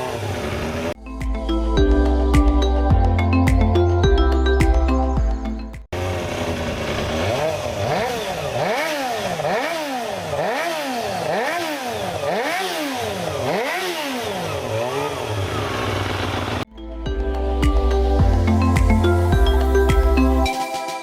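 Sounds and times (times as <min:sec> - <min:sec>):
motorcycle engine revving: 0:00.0 - 0:01.1, 0:05.9 - 0:16.7.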